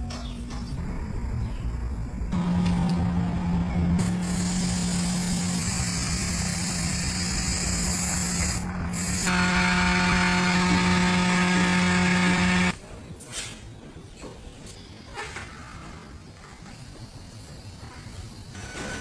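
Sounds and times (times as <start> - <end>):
power tool humming: 2.3 - 12.8.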